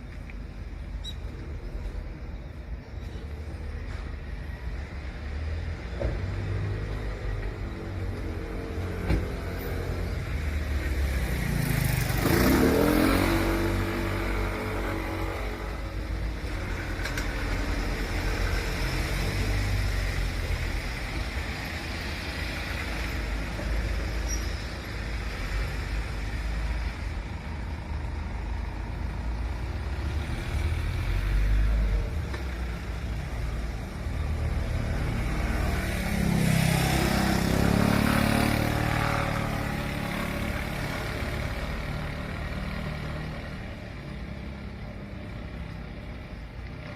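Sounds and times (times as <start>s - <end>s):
low rumble of engines: 0.0s - 46.9s.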